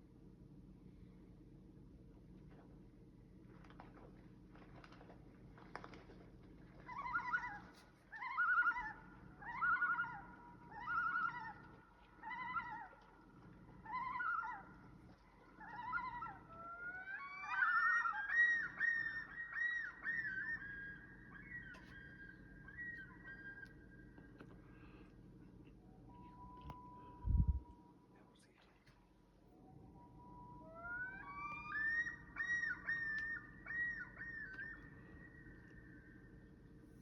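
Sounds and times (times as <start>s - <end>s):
faint low hum: 0.0s - 37.0s
loon calling: 6.8s - 24.9s, 30.0s - 36.2s.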